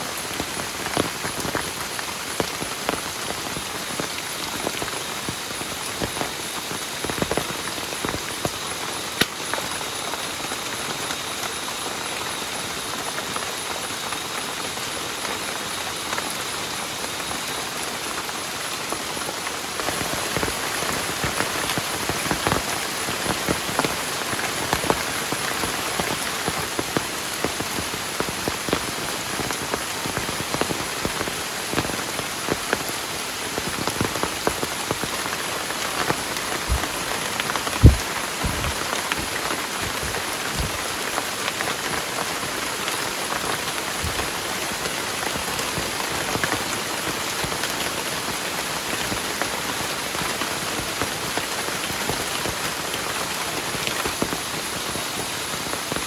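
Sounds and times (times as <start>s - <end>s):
heavy rain falling: 0.0s - 56.0s
dull thuds: 37.8s - 38.8s.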